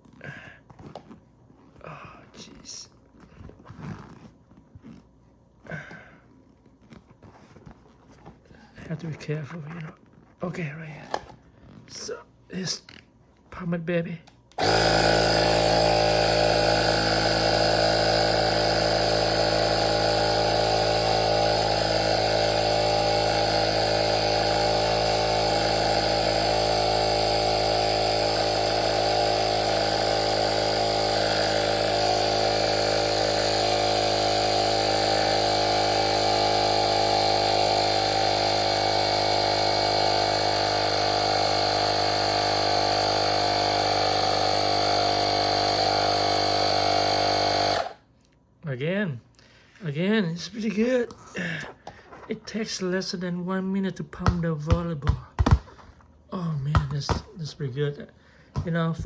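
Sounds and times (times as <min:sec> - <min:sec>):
electric compressor buzzing: 0:14.5 - 0:48.0.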